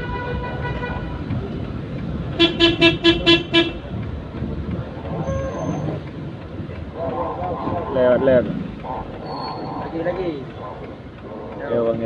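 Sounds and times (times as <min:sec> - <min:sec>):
vehicle engine and road noise: 0:00.0 - 0:12.0
vehicle horn short toots: 0:02.4 - 0:03.8.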